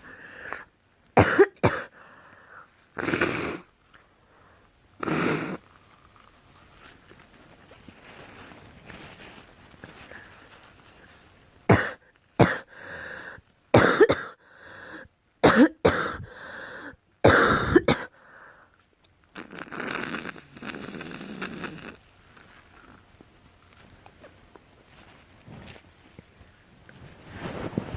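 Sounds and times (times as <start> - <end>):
noisy breathing: 0.0 - 0.7, 1.8 - 5.8, 12.5 - 13.5, 14.4 - 15.1, 16.0 - 18.8
girl coughing: 1.2 - 1.9, 11.7 - 12.7, 13.8 - 14.4, 15.4 - 16.3, 17.2 - 18.1.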